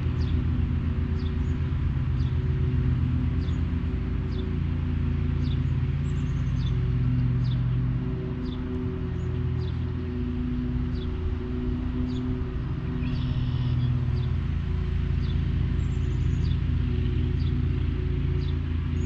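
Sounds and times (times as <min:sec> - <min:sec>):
low machine hum: 0:00.0 - 0:19.0.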